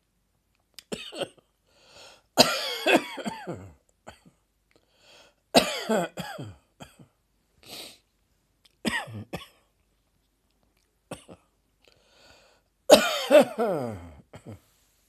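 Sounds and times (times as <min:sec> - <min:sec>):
person coughing: 0:00.9 - 0:01.4, 0:02.4 - 0:04.4, 0:05.6 - 0:07.2, 0:08.8 - 0:09.7, 0:11.1 - 0:11.5, 0:12.9 - 0:14.6.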